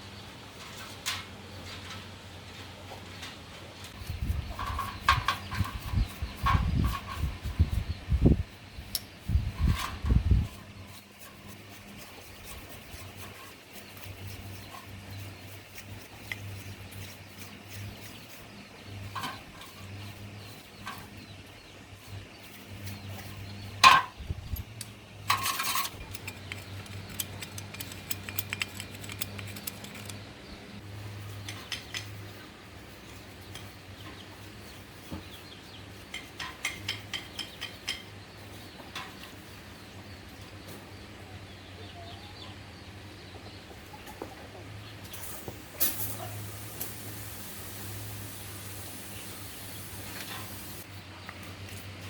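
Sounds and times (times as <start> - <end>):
metal tools clinking: 23.8 - 30.3.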